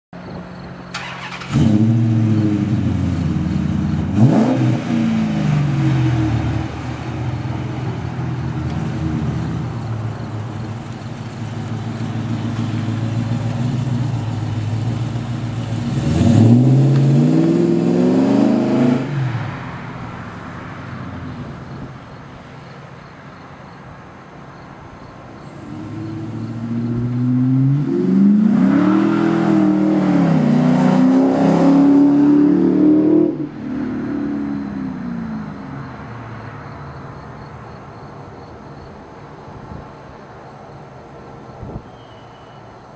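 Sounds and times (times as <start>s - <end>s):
car engine revving: 1.0s - 22.0s, 25.4s - 36.0s.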